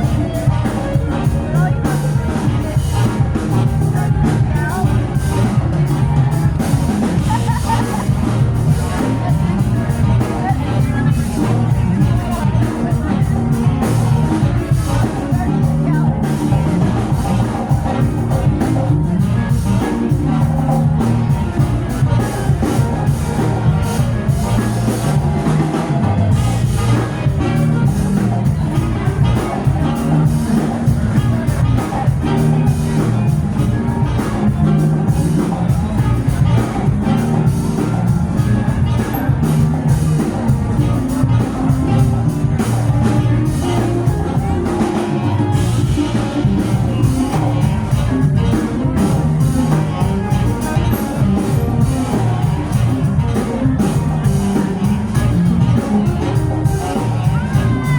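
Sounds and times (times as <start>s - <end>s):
drum kit beat: 0.0s - 57.9s
live rock band playing: 0.0s - 57.9s.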